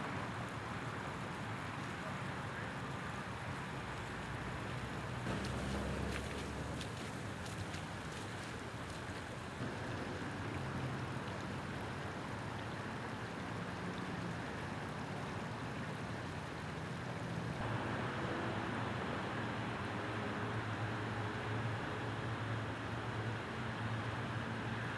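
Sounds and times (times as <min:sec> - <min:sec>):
water rushing: 0:05.2 - 0:08.2, 0:09.6 - 0:17.7.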